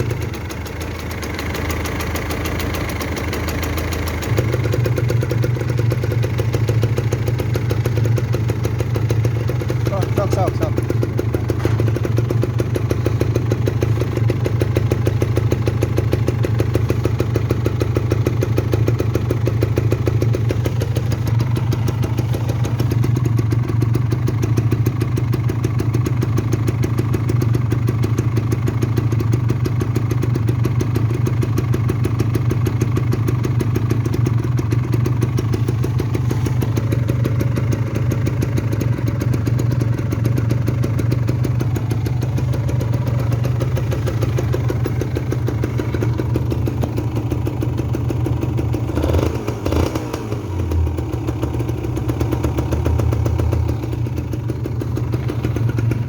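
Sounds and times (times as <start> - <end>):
motorcycle engine idling: 0.0 - 56.0.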